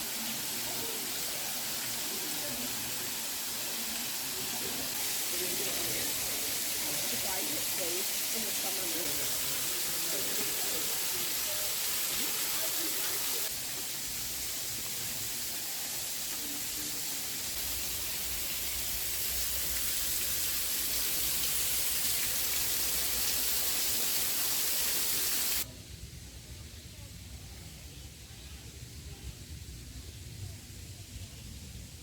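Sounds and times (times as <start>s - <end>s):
quiet outdoor background: 9.4s - 32.0s.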